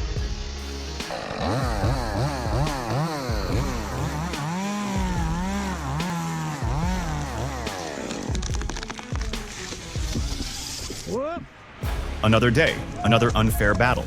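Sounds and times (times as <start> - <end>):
chainsaw engine revving: 0.2 - 10.7.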